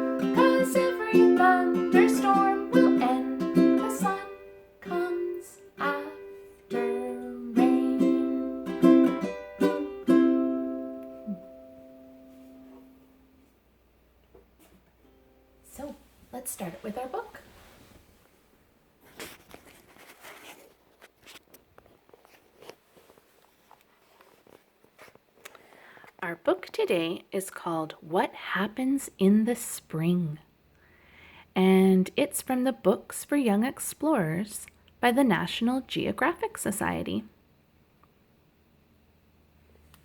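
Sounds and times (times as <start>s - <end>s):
ukulele strumming chords: 0.0s - 13.4s, 15.0s - 15.9s
book being handled: 19.0s - 25.2s.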